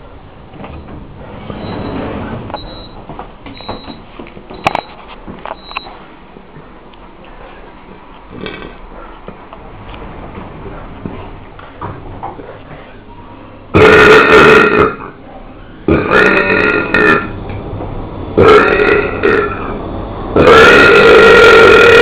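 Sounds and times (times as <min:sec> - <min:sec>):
person belching loudly: 0:13.8 - 0:15.2, 0:15.9 - 0:17.4, 0:18.4 - 0:19.7, 0:20.4 - 0:22.0.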